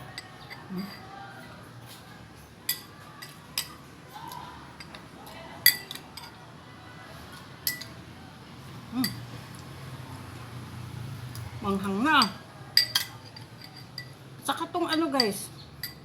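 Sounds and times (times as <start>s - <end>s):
spoon clinking against plate: 0.0s - 1.1s, 2.7s - 3.8s, 4.8s - 6.4s, 7.6s - 8.0s, 12.2s - 14.2s, 14.8s - 16.0s.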